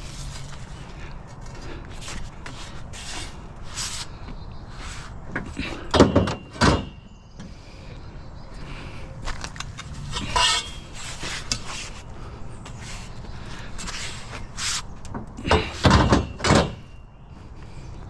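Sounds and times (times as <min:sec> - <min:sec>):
scrap clattering and scraping: 0:09.3 - 0:12.1.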